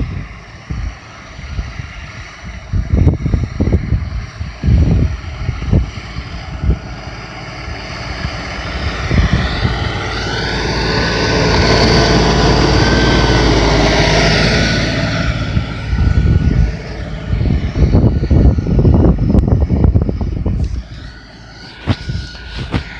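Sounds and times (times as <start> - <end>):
tractor diesel engine running: 0.0 - 22.9
whine bending in pitch: 0.0 - 22.9.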